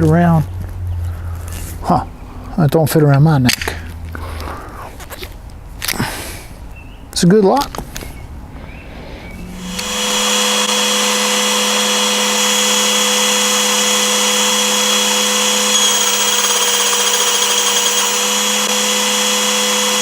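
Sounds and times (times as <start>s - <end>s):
power tool motor running: 9.6s - 20.0s.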